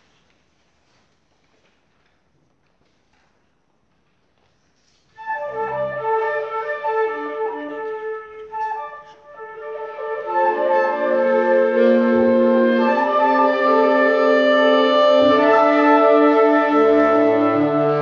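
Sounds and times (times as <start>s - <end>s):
accompanying instruments: 5.2s - 18.0s
flute playing: 5.2s - 18.0s.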